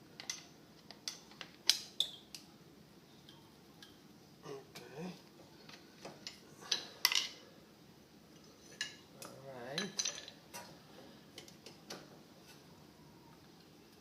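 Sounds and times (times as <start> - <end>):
man murmuring: 4.4 - 5.2
metal parts clicking and clinking: 9.2 - 10.7.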